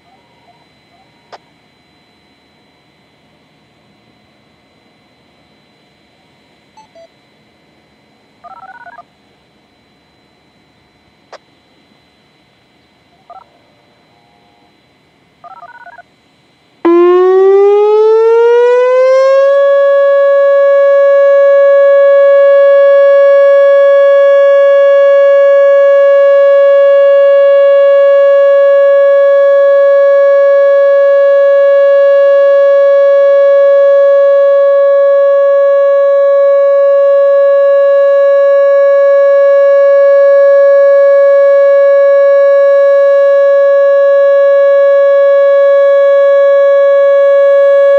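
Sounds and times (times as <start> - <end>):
electronic warning siren: 0.0 - 47.9
short electronic beep: 6.8 - 7.1.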